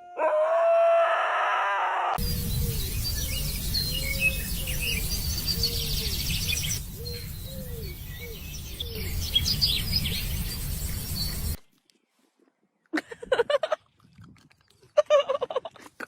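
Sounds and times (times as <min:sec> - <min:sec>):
birds chirping: 0:02.2 - 0:11.6
short low bird calls: 0:02.2 - 0:11.6
steady low rumble: 0:02.2 - 0:11.6.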